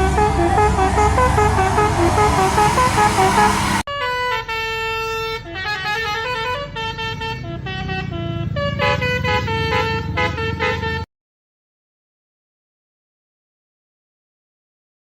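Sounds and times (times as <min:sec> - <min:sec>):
bus engine rumble: 0:00.0 - 0:11.1
musical air horn playing a tune: 0:00.0 - 0:11.1.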